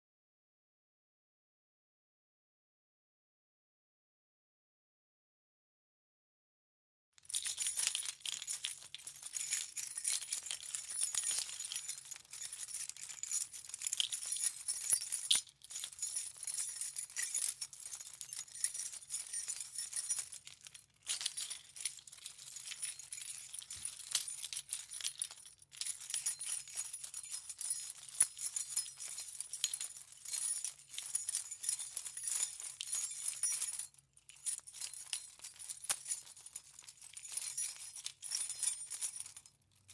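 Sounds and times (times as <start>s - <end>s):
keys jingling: 7.2s - 39.9s.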